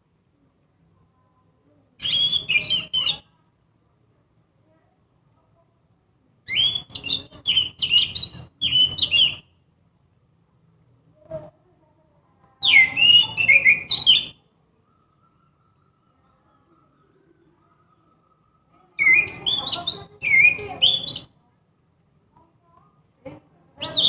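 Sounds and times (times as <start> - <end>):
thrush singing whistled notes: 2.0 - 3.2, 6.5 - 9.5, 12.6 - 21.4.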